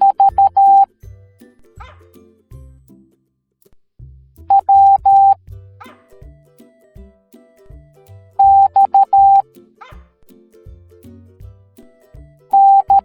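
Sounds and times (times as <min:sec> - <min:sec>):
morse code beeps: 0:00.0 - 0:00.9, 0:04.5 - 0:05.4, 0:08.4 - 0:09.4, 0:12.6 - 0:13.0
background music: 0:00.0 - 0:03.4, 0:04.2 - 0:13.0.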